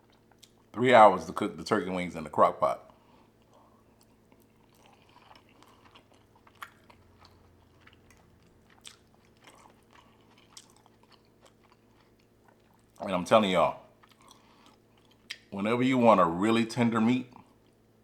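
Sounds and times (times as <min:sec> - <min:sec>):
person chewing food: 0:00.0 - 0:00.7, 0:02.9 - 0:13.0, 0:13.9 - 0:15.5, 0:17.3 - 0:17.9
wet mouth clicks and smacks: 0:15.0 - 0:15.5.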